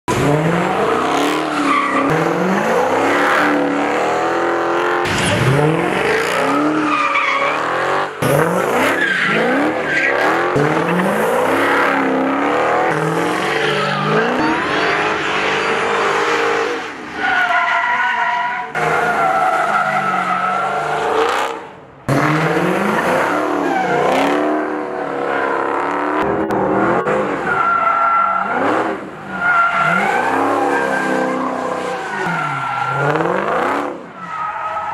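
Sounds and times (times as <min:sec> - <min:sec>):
car engines revving hard: 0:00.1 - 0:34.9
tyres squealing and skidding: 0:00.1 - 0:34.9.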